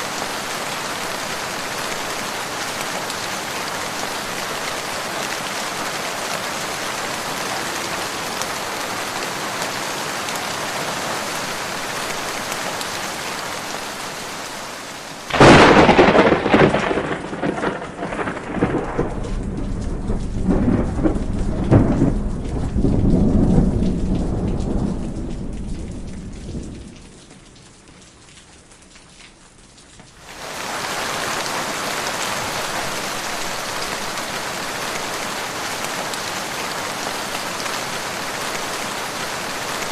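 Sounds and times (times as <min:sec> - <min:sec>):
heavy rain: 0:00.0 - 0:39.9
thunderclap rolling into rumble: 0:15.3 - 0:27.1.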